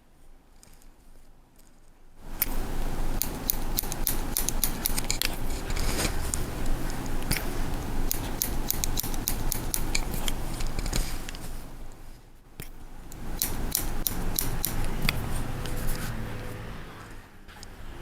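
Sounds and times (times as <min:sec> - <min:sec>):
scissors snipping hair: 0:03.2 - 0:11.4, 0:12.6 - 0:16.2.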